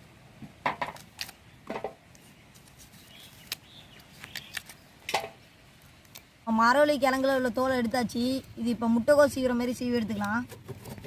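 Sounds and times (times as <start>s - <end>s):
knife scraping root peel: 0.8s - 1.5s, 2.1s - 4.8s, 5.8s - 6.3s, 10.1s - 11.0s.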